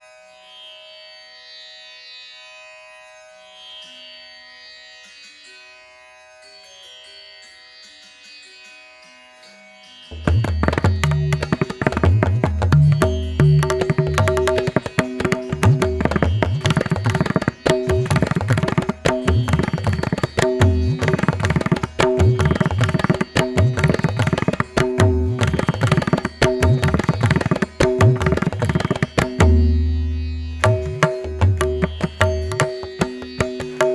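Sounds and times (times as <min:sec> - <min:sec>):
tabla-style drumming: 0:10.1 - 0:33.9.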